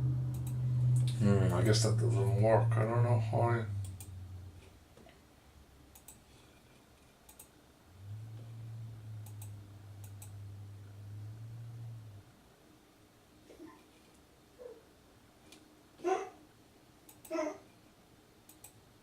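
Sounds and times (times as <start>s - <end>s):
steady low hum: 0.0s - 19.0s
computer mouse double-clicking: 0.3s - 1.1s, 6.0s - 6.2s, 9.2s - 10.3s.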